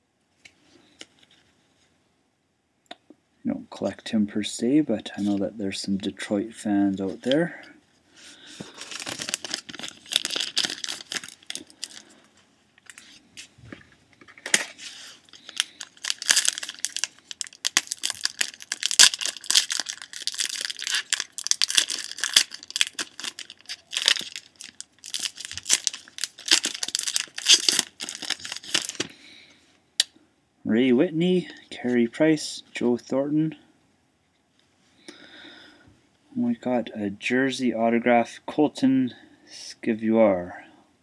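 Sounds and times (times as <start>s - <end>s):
foil wrapper tearing and crinkling: 8.7s - 12.1s, 14.9s - 29.1s.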